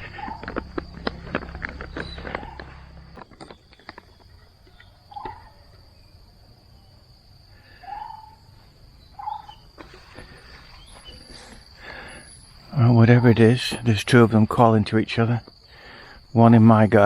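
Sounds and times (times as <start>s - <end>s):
bird giving short low calls: 0.0s - 3.1s
high insect drone: 0.0s - 17.0s.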